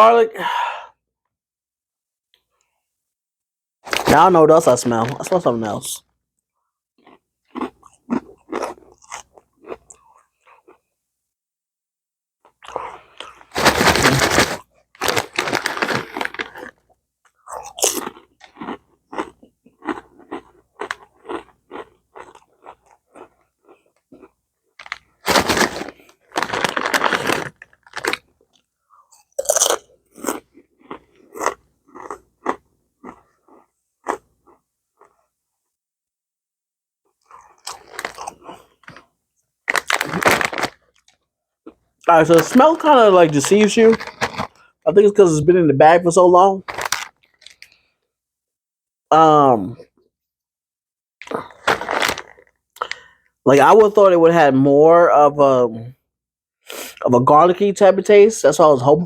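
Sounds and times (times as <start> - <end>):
crunching potato chips: 3.9 - 5.5, 7.0 - 10.8, 12.5 - 35.2, 37.2 - 41.3, 42.1 - 44.7, 46.6 - 47.9, 51.2 - 53.2.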